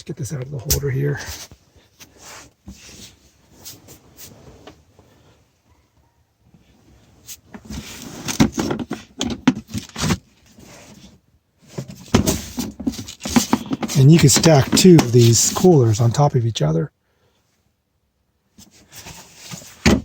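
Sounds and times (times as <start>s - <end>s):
plastic cases knocking and clunking: 8.3s - 10.3s, 11.7s - 15.7s, 19.5s - 20.0s.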